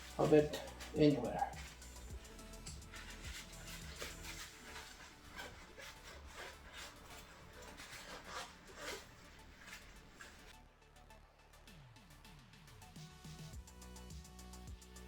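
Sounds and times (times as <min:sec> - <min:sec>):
cloth wiping a wheel: 0:00.0 - 0:10.6.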